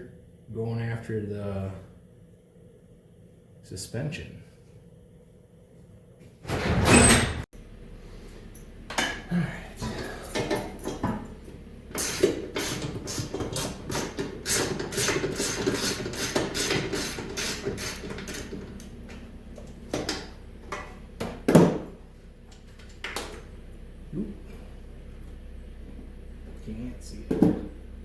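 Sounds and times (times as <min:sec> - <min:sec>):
ratchet wrench clicking: 0:12.0 - 0:18.5.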